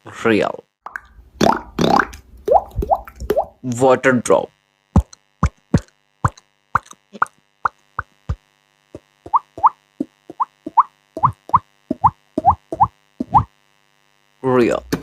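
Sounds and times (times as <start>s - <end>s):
beatboxer making water-drop plops: 5.0s - 8.4s, 9.3s - 13.5s.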